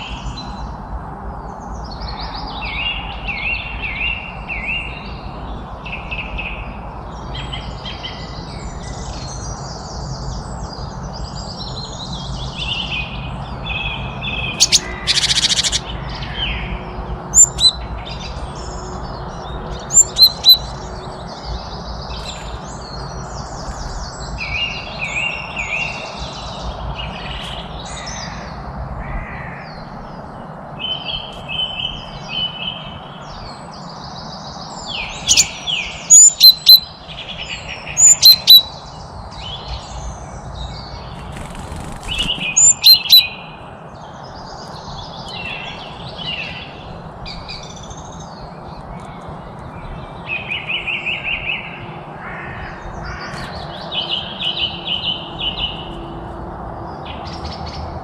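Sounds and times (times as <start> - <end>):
birds chirping and singing: 1.4 - 56.2
loud sharp chirps: 14.5 - 15.9.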